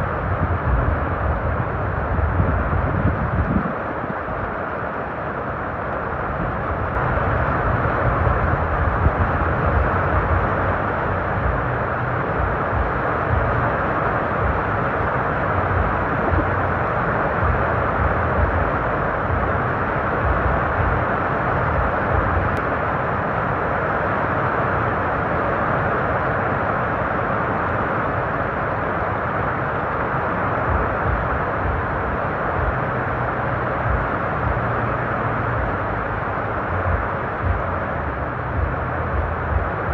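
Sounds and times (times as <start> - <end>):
strong wind on microphone: 0.0 - 39.9.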